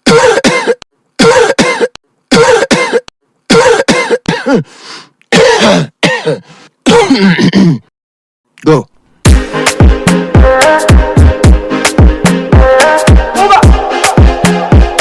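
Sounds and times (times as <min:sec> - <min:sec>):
person coughing: 0:00.0 - 0:04.7, 0:05.3 - 0:07.9.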